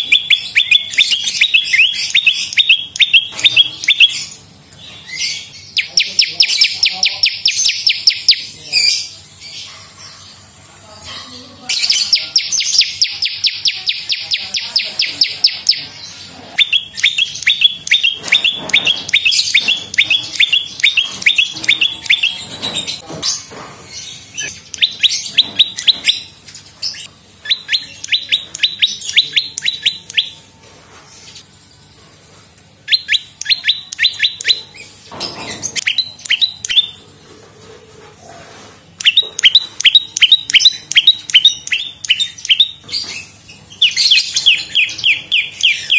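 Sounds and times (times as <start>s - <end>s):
bird singing sharp chip notes: 0.0s - 8.6s, 16.6s - 23.0s, 24.0s - 30.4s, 32.9s - 37.0s, 39.0s - 43.2s.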